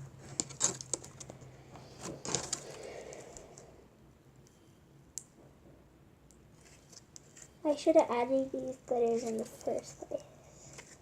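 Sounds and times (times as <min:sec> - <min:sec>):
soft rustle: 0:06.5 - 0:07.6, 0:09.0 - 0:11.0.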